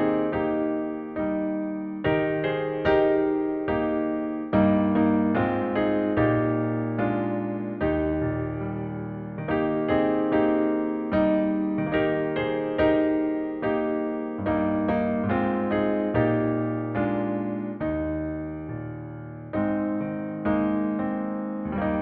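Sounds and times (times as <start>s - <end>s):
slow keyboard chords: 0.0s - 22.0s.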